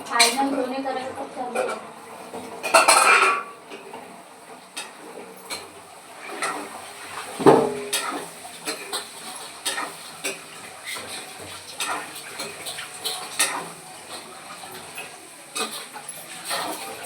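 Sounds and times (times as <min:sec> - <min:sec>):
metal spoon scraping a pan: 0:07.3 - 0:17.0.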